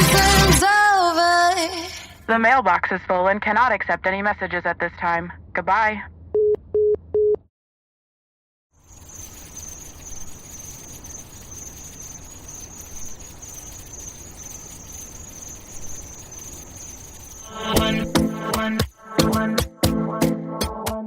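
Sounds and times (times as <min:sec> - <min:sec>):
insects trilling: 0:08.8 - 0:19.5.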